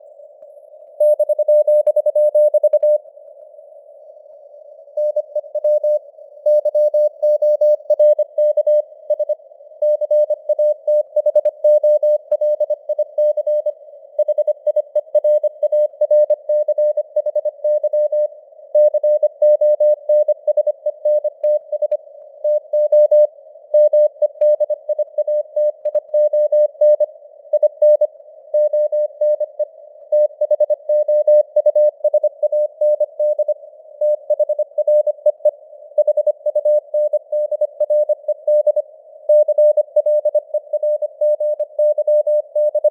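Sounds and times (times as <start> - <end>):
morse code beeps: 1.0 - 3.0, 5.0 - 21.9.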